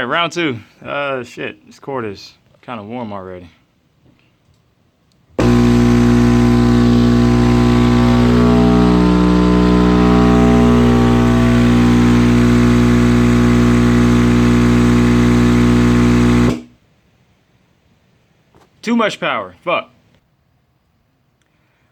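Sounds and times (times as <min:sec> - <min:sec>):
subwoofer playing low bass tone: 0:05.4 - 0:16.7.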